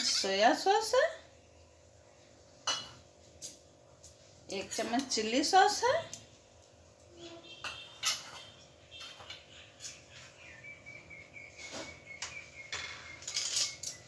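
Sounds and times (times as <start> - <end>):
spoon and containers clicking: 7.6 - 10.1, 12.7 - 14.0.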